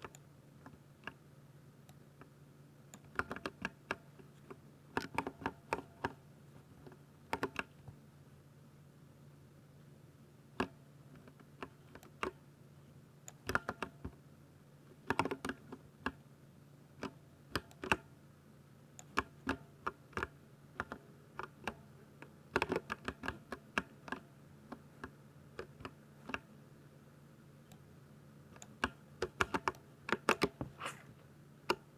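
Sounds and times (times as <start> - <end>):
mechanical keyboard typing: 15.1 - 16.2, 22.6 - 24.2.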